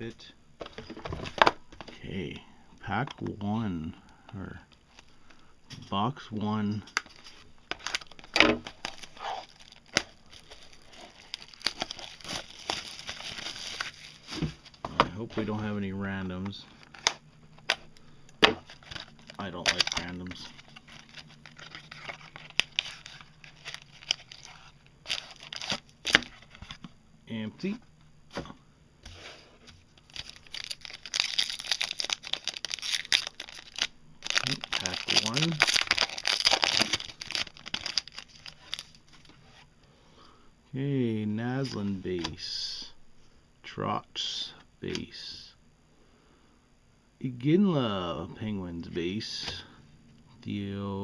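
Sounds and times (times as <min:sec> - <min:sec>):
cardboard packaging crinkling and tearing: 0:07.0 - 0:14.7, 0:18.6 - 0:26.8, 0:29.9 - 0:39.6.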